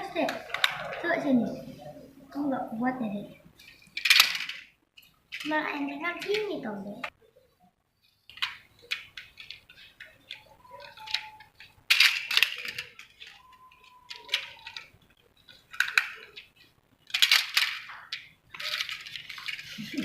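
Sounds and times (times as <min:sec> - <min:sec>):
plastic pieces clattering: 0:03.6 - 0:06.5, 0:08.2 - 0:20.0
plastic track pieces clicking: 0:03.6 - 0:06.5, 0:08.3 - 0:20.0.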